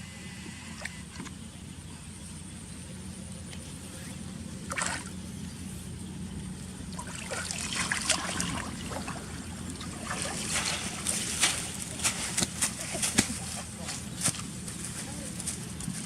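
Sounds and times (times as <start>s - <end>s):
steady low hum: 0.0s - 16.0s
water splashing and trickling: 4.6s - 5.2s, 6.5s - 13.8s.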